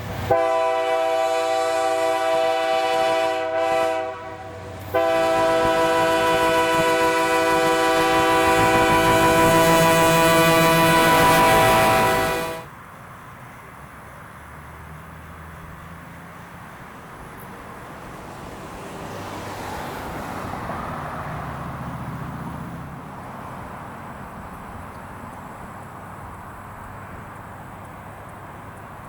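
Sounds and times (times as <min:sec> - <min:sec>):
diesel locomotive engine rumble: 0:00.0 - 0:29.0.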